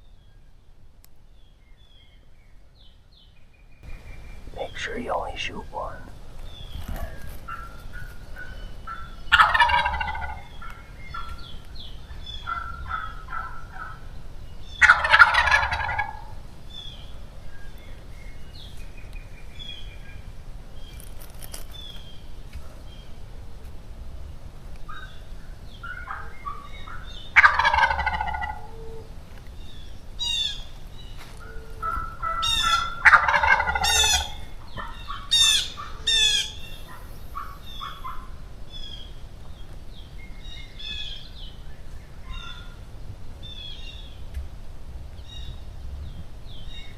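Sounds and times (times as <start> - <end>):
quieter short turkey calls: 6.7 - 11.4, 25.8 - 29.1, 31.4 - 38.4
turkeys gobbling: 7.0 - 11.5, 12.2 - 14.1, 14.8 - 16.4, 25.8 - 29.1, 31.3 - 38.4.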